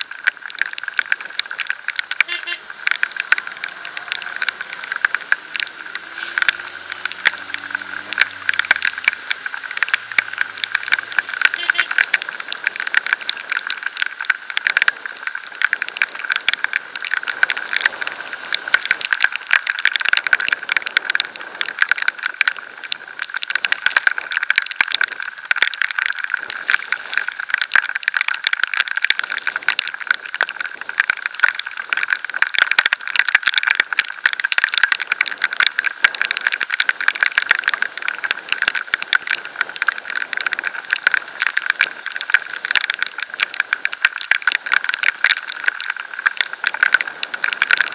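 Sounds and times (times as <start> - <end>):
water drops striking camera: 1.6 - 13.7.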